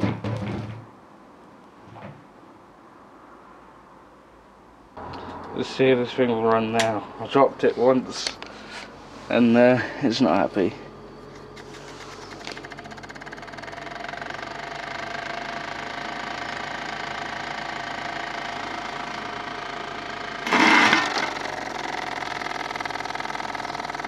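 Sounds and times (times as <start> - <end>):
fan heater motor whine: 5.0 - 24.0
harsh burst of noise: 20.4 - 21.5.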